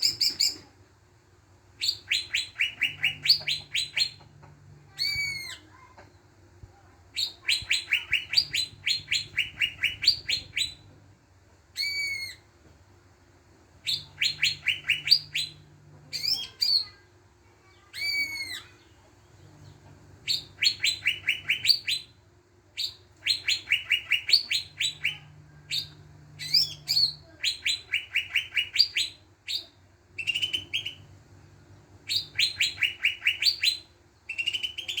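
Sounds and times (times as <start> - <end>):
bird singing whistled phrases: 0.0 - 0.6, 1.8 - 4.2, 4.9 - 5.6, 7.2 - 10.8, 11.8 - 12.4, 13.8 - 16.9, 18.0 - 18.7, 20.2 - 22.1, 22.8 - 31.1, 32.1 - 35.0
faint low hum: 0.0 - 35.0.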